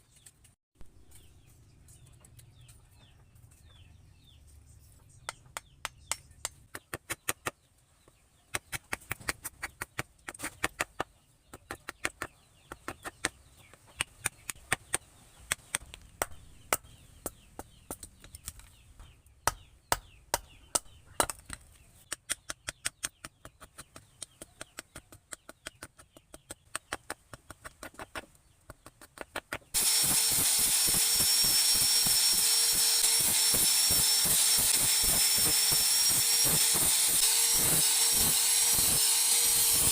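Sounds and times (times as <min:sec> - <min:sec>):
power tool whining: 0:29.8 - 0:39.9.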